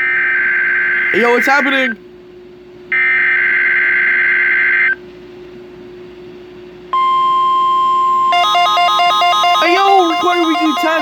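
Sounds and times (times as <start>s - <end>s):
buzzing digital data tone: 7.0s - 11.0s
warning alarm tone: 7.0s - 11.0s.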